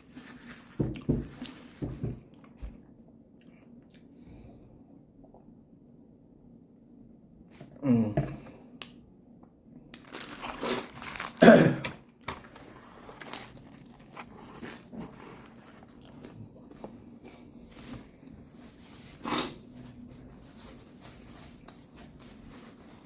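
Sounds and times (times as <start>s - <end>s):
crinkling wrapper: 9.9s - 16.3s
biting and chewing food: 12.2s - 17.0s.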